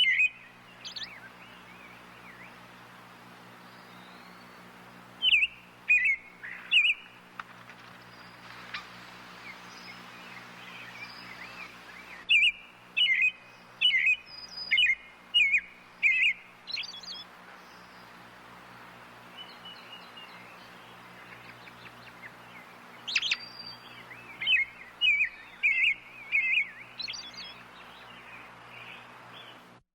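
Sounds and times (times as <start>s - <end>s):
robin whistling: 0.0s - 2.6s, 5.2s - 7.0s, 9.7s - 17.2s, 22.5s - 27.6s.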